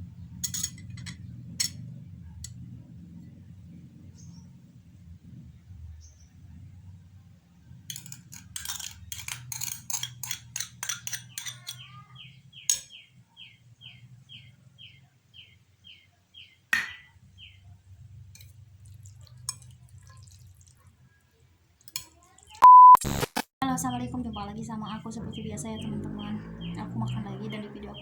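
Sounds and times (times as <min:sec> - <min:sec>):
short high chirps: 0:22.6 - 0:23.2.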